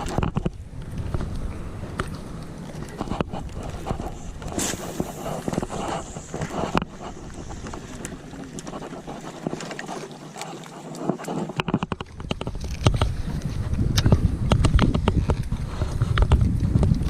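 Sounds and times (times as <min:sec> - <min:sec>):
wind buffeting microphone: 0:00.0 - 0:10.0, 0:11.2 - 0:17.0
water noise: 0:00.0 - 0:17.0.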